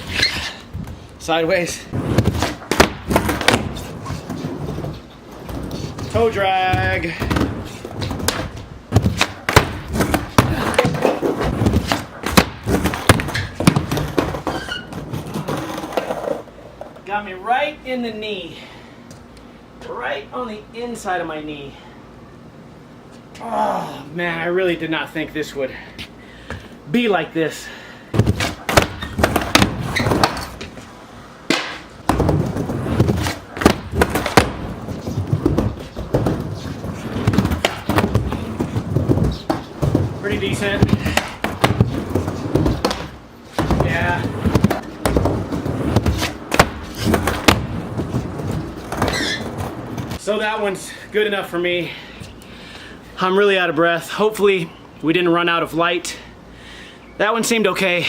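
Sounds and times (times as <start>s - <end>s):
skateboard wheels rolling: 0.0s - 17.1s, 28.1s - 50.3s
skateboard clattering: 1.9s - 17.0s, 28.2s - 30.9s, 31.5s - 50.2s.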